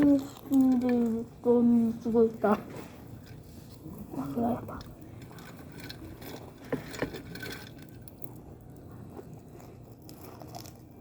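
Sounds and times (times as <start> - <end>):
utensils scraping and clicking: 4.7 - 8.4.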